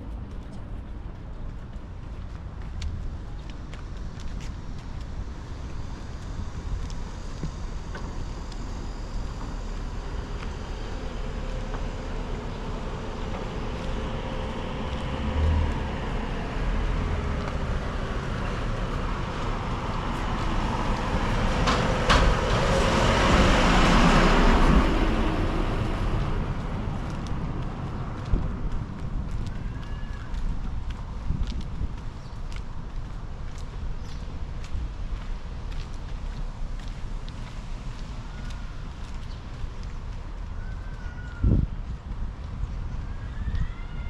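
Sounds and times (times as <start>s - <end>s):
road traffic rumble: 0.0s - 44.0s
vehicle passing close by: 8.8s - 31.0s.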